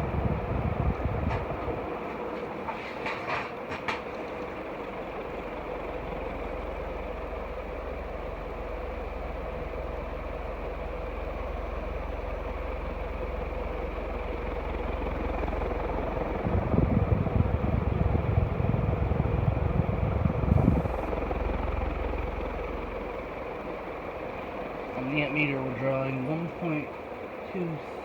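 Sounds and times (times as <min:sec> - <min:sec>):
air buffeting microphone: 0:00.0 - 0:02.0, 0:14.9 - 0:23.7
ceiling fan motor hum: 0:00.0 - 0:28.0
rush of moving air: 0:16.2 - 0:21.6.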